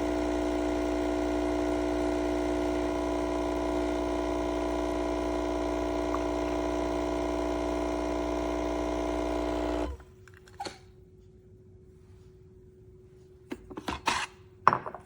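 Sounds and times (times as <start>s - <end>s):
espresso maker pump buzzing: 0.0s - 10.1s.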